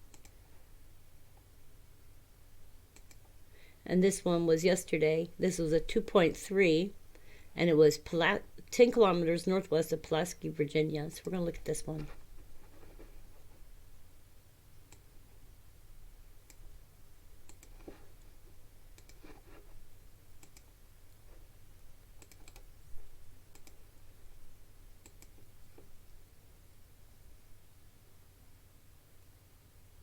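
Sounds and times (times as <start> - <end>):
computer mouse clicks: 0.0 - 0.4, 2.9 - 3.3, 14.9 - 15.1, 17.4 - 18.3, 18.9 - 19.4, 20.4 - 20.7, 22.2 - 22.7, 23.5 - 23.8, 25.0 - 25.5
keyboard clicks: 0.0 - 0.4, 17.4 - 17.8, 19.0 - 19.2, 20.4 - 20.7, 22.2 - 22.7, 23.5 - 23.8, 25.0 - 25.4
faint low hum: 0.0 - 30.0.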